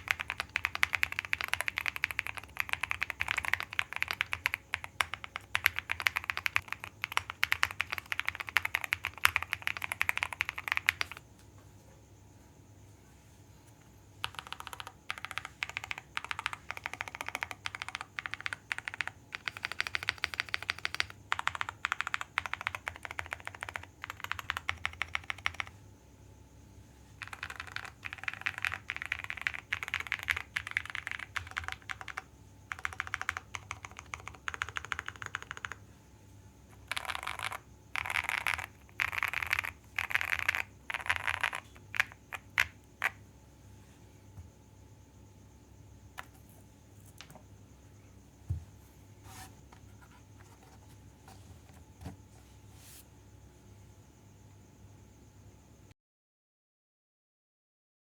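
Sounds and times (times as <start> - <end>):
typing on mechanical keyboard: 0.0 - 11.2, 14.2 - 25.7, 27.2 - 35.8, 36.7 - 43.2.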